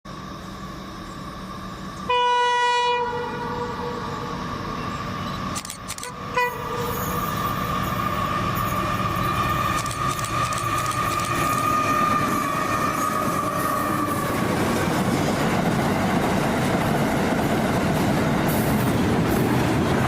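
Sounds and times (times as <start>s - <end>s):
train rumbling past: 0.1s - 20.0s
locomotive horn blasts: 2.1s - 4.4s, 6.0s - 7.4s.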